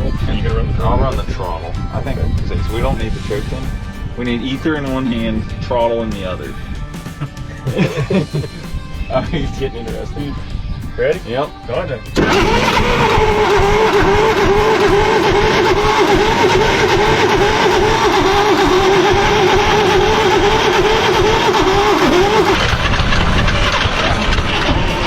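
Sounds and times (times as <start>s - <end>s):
engine cranking by starter: 12.1s - 25.0s.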